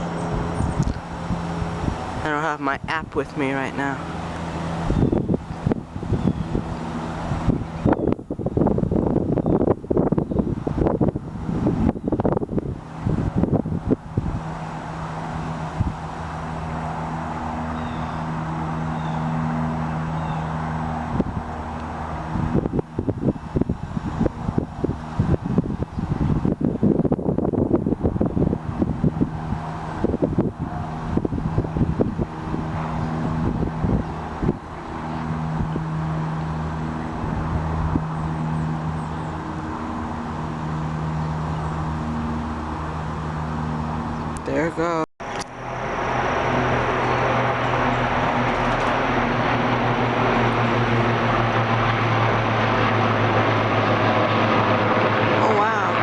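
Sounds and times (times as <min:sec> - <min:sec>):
engine hum: 0:00.0 - 0:56.0.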